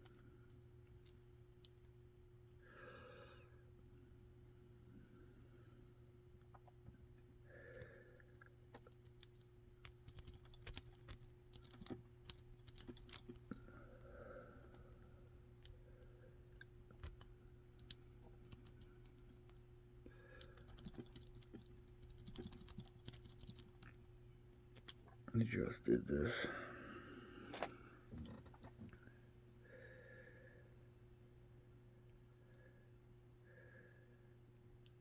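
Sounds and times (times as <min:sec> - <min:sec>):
steady low hum: 0:00.0 - 0:35.0
metallic clicks of lock picking: 0:08.6 - 0:14.0, 0:14.6 - 0:19.7, 0:20.4 - 0:25.2.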